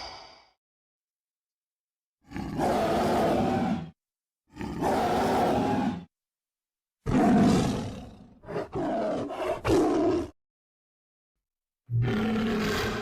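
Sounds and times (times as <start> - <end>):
creature roar: 2.3 - 6.1, 12.0 - 13.0.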